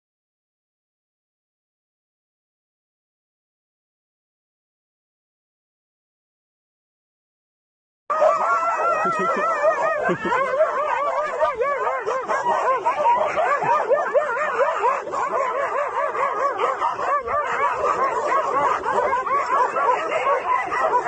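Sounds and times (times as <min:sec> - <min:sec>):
dog yipping and whining: 0:08.2 - 0:21.0.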